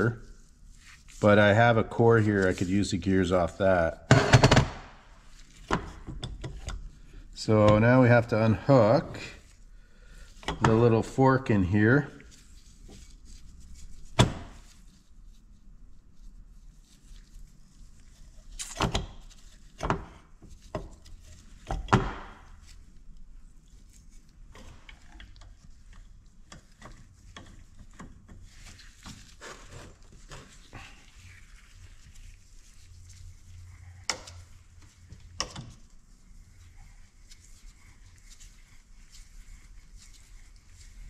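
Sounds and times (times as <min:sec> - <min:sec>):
hand tools knocking on metal: 0:04.1 - 0:04.7.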